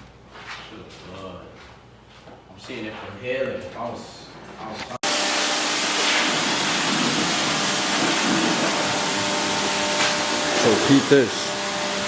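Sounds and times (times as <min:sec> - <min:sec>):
loud rushing hiss: 0:05.0 - 0:12.0.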